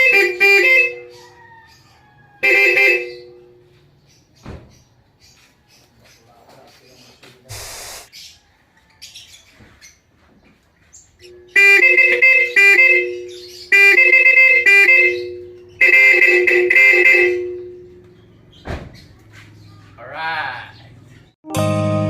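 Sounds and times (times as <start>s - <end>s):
car horn toots: 0.0s - 1.2s, 2.4s - 3.5s, 11.3s - 18.1s.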